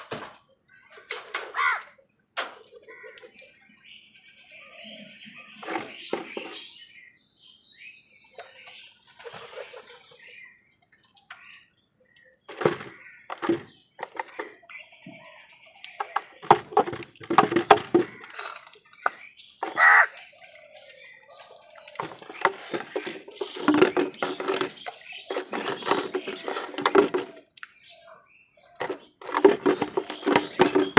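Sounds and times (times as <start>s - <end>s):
crows cawing: 1.4s - 2.0s, 2.8s - 3.4s, 17.9s - 18.8s, 19.6s - 20.4s.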